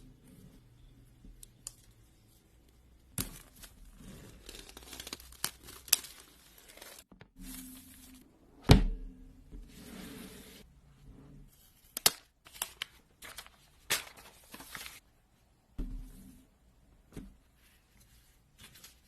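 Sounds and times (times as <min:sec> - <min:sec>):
packaging tearing and crinkling: 0:03.2 - 0:07.1
loud thump: 0:08.6 - 0:09.6.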